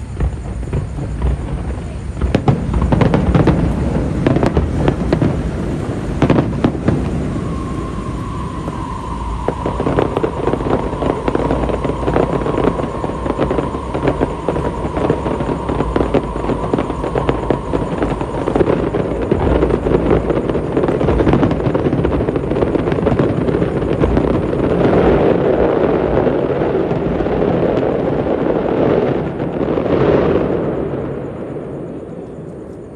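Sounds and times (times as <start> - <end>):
fireworks popping and crackling: 0.0 - 32.9
steady high tone: 3.7 - 24.6.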